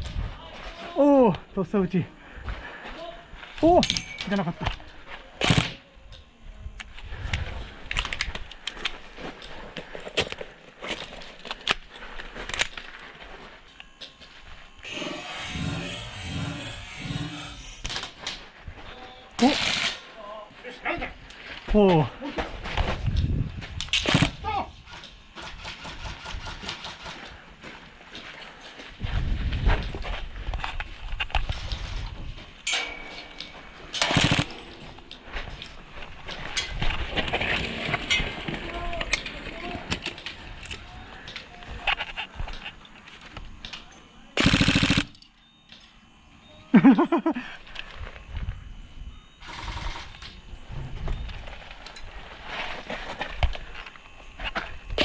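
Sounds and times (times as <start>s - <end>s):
airsoft gun firing bursts: 34.0s - 34.8s, 44.4s - 45.2s.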